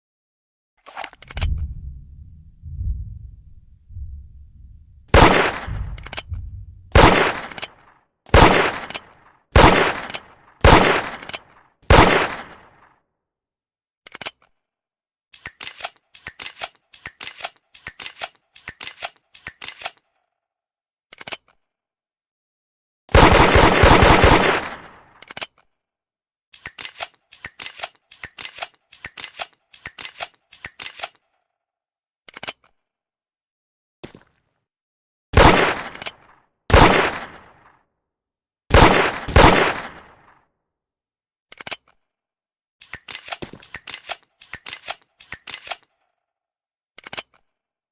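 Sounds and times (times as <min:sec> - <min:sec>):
loud gunshot: 0:05.1 - 0:07.6.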